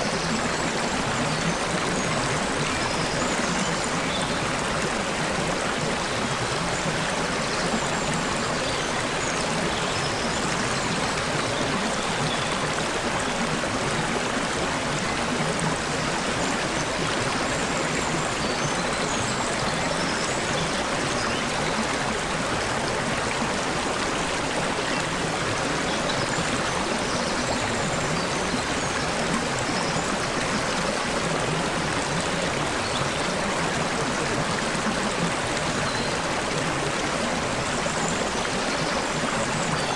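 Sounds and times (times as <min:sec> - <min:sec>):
stream water over rocks: 0:00.0 - 0:39.9.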